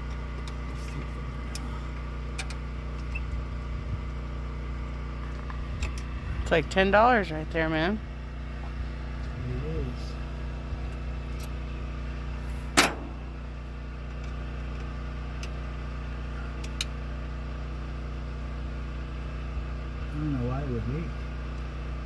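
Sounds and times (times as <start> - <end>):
engine idling hum: 0.0 - 22.0
sharp metallic clank: 12.6 - 13.4.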